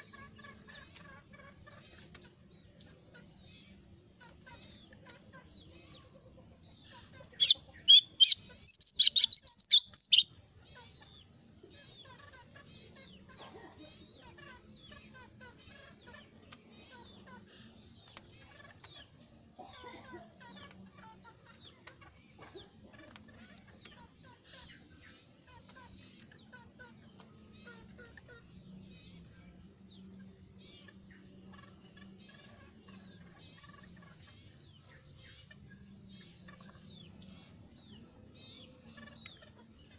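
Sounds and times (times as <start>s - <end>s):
bird chirping: 0.0s - 39.9s.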